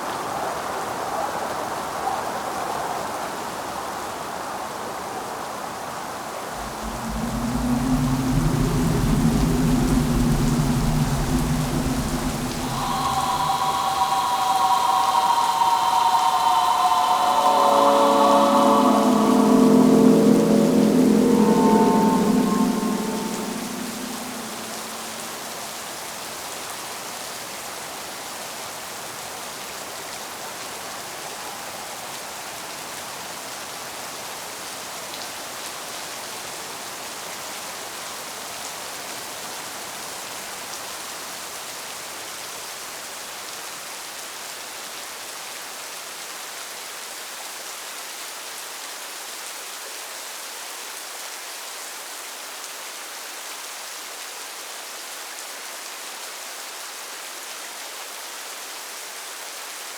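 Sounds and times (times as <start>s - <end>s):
steady rain falling: 6.6s - 23.9s.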